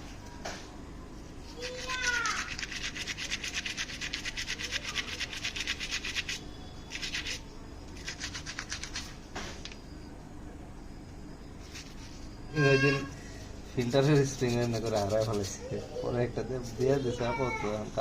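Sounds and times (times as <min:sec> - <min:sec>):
brush scrubbing: 0:01.5 - 0:07.4, 0:08.0 - 0:09.1, 0:11.6 - 0:12.2, 0:13.7 - 0:15.6.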